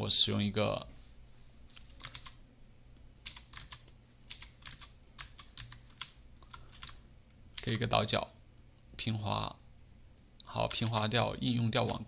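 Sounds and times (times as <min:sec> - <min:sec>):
faint low hum: 0:00.0 - 0:12.0
keyboard keystrokes: 0:01.7 - 0:02.4, 0:03.3 - 0:07.0.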